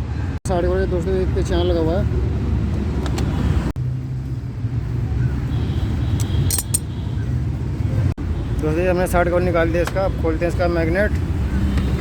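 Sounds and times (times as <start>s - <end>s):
low rumble of traffic: 0.0s - 12.0s
light metallic clinks of tools: 6.5s - 6.9s.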